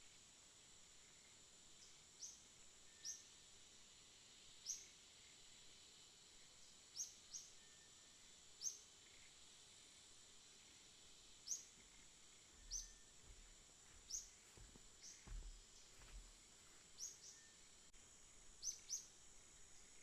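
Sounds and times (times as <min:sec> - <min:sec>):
high insect drone: 0:00.0 - 0:20.0
faint high chirps: 0:11.4 - 0:16.1.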